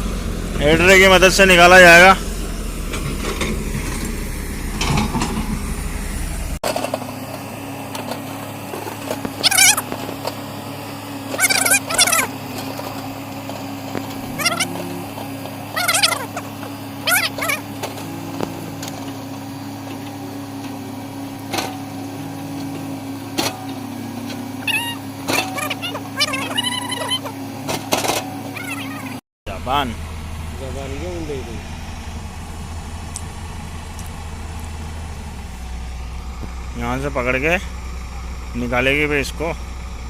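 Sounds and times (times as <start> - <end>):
diesel engine running: 0.0 - 40.0
short warbling call: 9.4 - 9.9, 11.3 - 12.4, 14.3 - 15.1, 15.7 - 18.8, 24.5 - 27.4.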